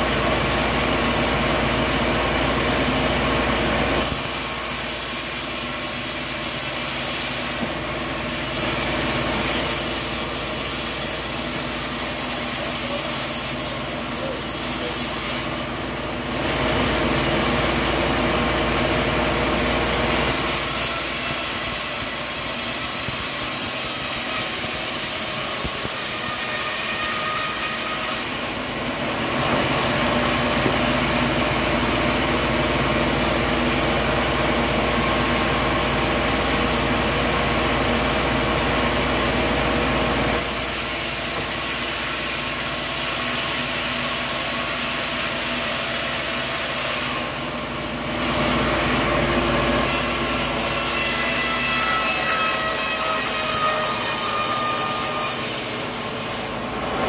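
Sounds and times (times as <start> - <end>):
saw cutting wood: 3.9 - 33.2, 40.4 - 47.4, 48.2 - 57.0.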